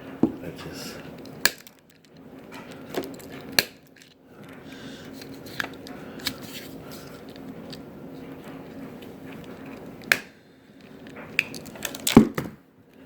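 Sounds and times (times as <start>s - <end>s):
wire cutters snipping: 1.0s - 4.2s, 11.1s - 12.5s.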